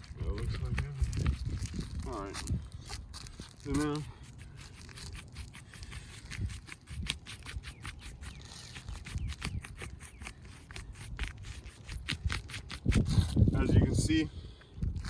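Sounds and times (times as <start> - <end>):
ticks and scrapes on roof shingles: 2.8 - 13.4.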